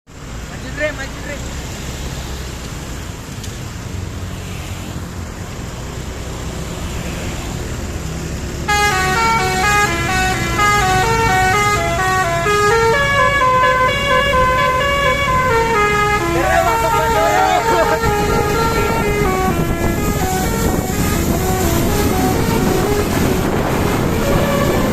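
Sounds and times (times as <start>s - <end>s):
vehicle engine rumble: 0.1s - 24.9s
bus multi-tone horn melody: 8.7s - 24.9s.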